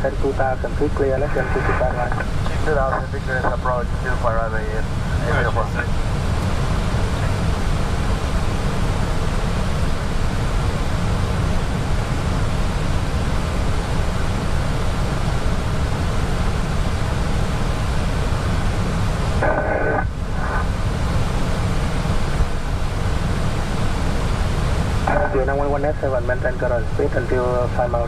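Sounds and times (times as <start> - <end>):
low engine rumble: 0.0 - 28.0
aircraft cabin rushing hiss: 0.4 - 7.8.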